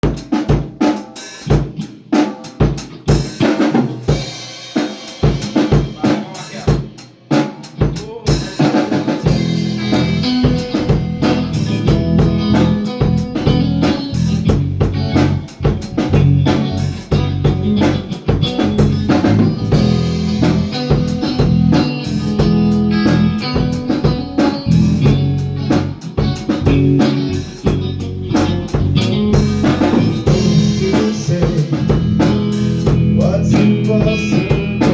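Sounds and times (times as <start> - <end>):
drum kit playing: 0.0 - 34.9
bass guitar: 7.6 - 34.9
guitar playing: 9.2 - 34.9.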